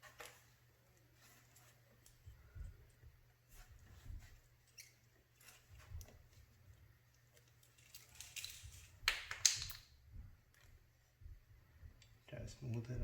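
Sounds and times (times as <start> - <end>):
hands working adhesive tape: 7.1 - 10.7
plastic film crinkle: 7.2 - 9.8.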